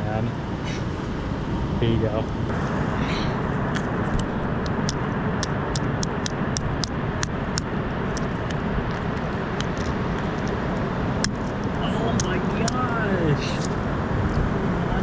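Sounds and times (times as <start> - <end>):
ocean surf: 0.0 - 15.0
wind: 0.0 - 15.0
shell cracking and clicking: 3.8 - 10.6, 11.2 - 12.8.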